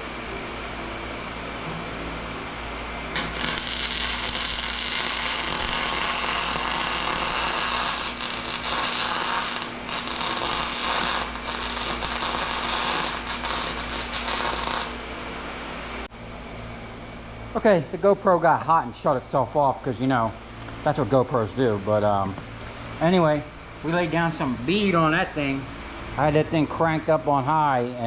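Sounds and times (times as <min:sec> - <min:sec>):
welder arc crackling: 0:03.1 - 0:15.1.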